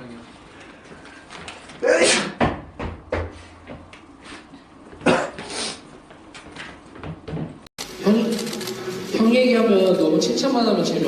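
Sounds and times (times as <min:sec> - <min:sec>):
man sneezing: 0:01.8 - 0:02.4.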